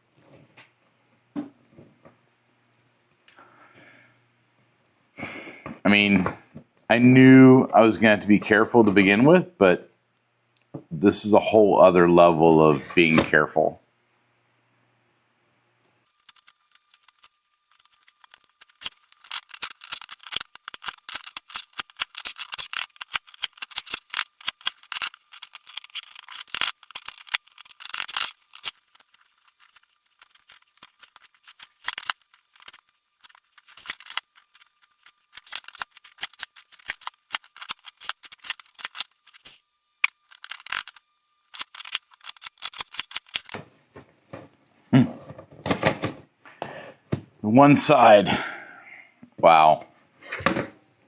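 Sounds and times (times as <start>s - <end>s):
puzzle cube clicking: 16.2s - 43.6s.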